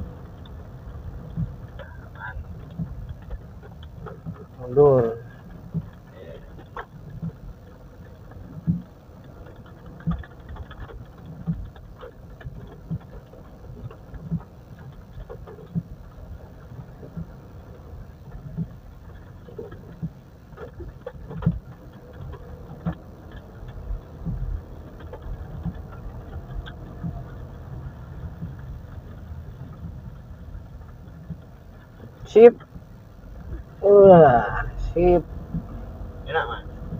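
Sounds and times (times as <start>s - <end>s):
engine and tyres rumbling: 0.0s - 36.9s.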